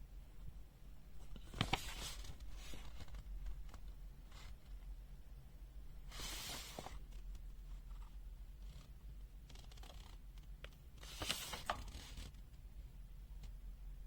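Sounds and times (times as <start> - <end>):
paper pages rustling: 1.3 - 4.6, 6.1 - 7.4, 9.5 - 12.4.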